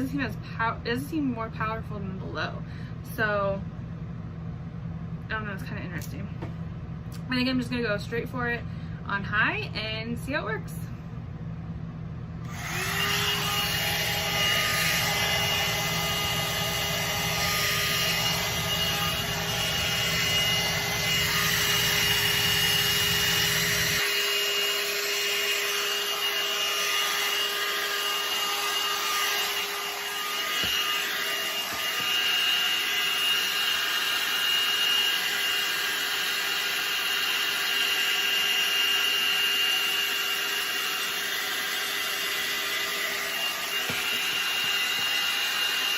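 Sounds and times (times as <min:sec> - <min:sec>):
hot air brush fan whining: 0:12.3 - 0:45.9.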